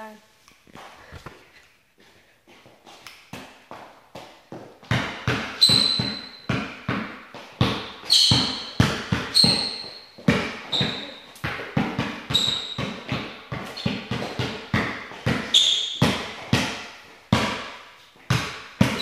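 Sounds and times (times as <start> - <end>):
basketball bouncing on hard floor: 2.6 - 19.0
short high squeaks: 5.6 - 6.4, 8.1 - 10.1, 15.5 - 16.0.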